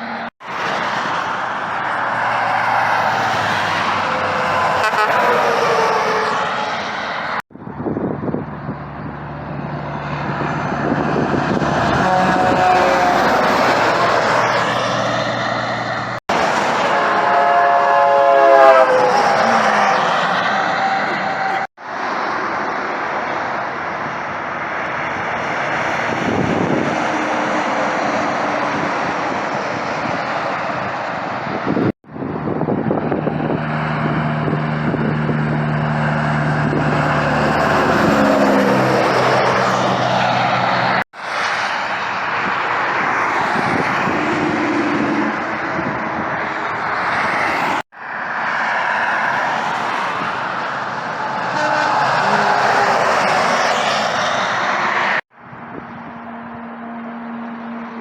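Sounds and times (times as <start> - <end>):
trucks passing on highway: 0.0 - 58.0
low truck engine drone: 6.1 - 42.9.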